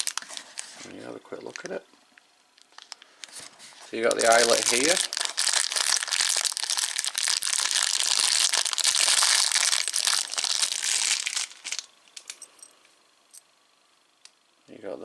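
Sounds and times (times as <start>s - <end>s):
packaging crinkling: 0.0s - 1.8s, 2.5s - 12.5s.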